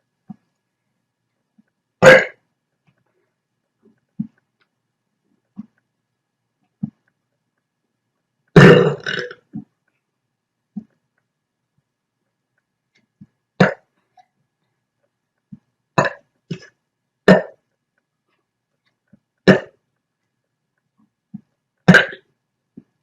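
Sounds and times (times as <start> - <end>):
person hiccuping and burping: 2.0 - 2.4, 8.6 - 9.4, 13.6 - 13.9, 16.0 - 16.7, 17.3 - 17.6, 19.5 - 19.8, 21.9 - 22.2.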